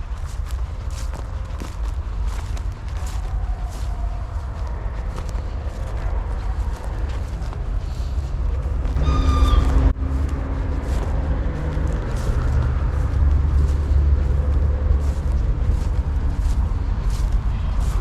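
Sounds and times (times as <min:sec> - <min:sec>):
train rumbling past: 0:03.5 - 0:18.0
train whistle blast: 0:09.0 - 0:09.9.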